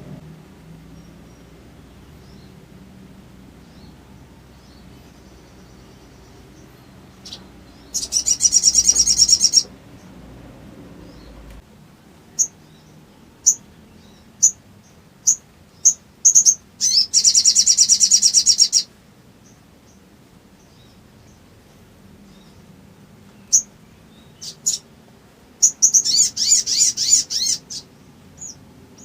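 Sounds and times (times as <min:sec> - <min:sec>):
bird chattering trill: 0:07.2 - 0:09.7, 0:15.3 - 0:18.9
bird sharp chips: 0:07.2 - 0:09.7.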